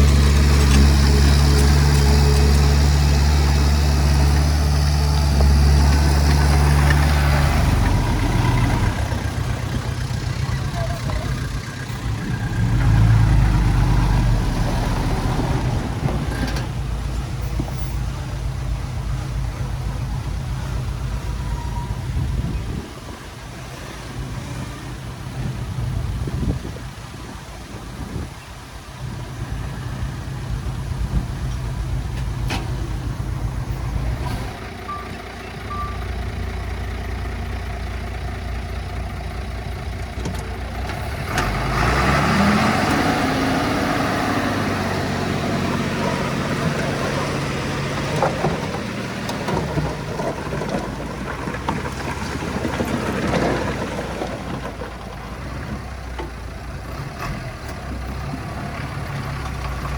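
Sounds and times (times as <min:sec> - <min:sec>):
diesel engine running: 0:00.0 - 0:59.9
faint short beeps: 0:34.9 - 0:36.2.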